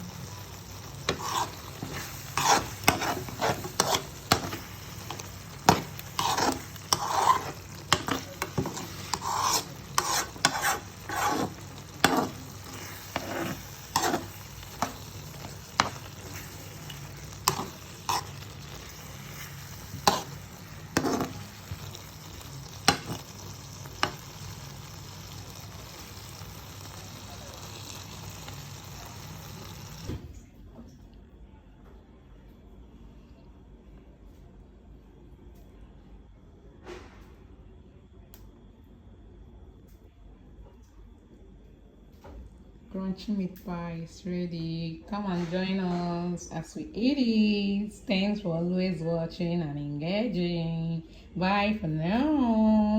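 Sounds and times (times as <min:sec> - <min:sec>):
food sizzling in a pan: 0:00.0 - 0:30.4
utensil scraping a pan: 0:00.8 - 0:23.3.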